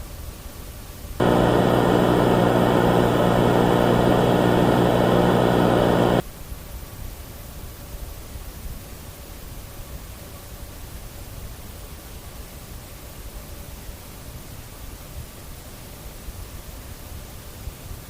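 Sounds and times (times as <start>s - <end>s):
harsh electronic buzz tone: 1.2s - 6.2s
static hiss: 1.2s - 6.2s.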